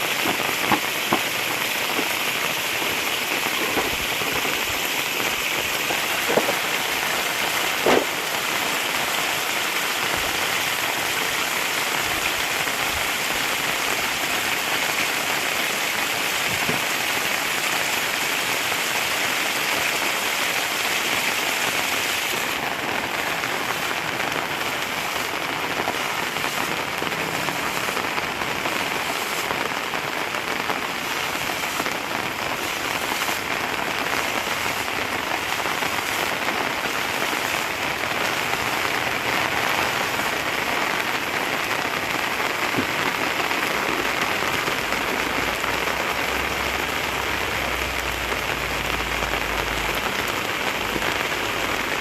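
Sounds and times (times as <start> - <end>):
steady rain: 0.0 - 52.0
short knocks: 6.2 - 6.6, 7.8 - 8.2.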